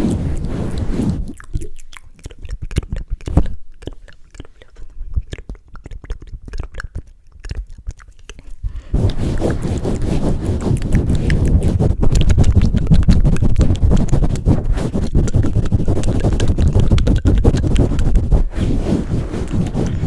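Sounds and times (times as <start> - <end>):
rubbing on microphone: 0.0 - 1.8, 3.2 - 3.6, 8.6 - 20.0
wet mouth clicks and smacks: 0.0 - 18.5.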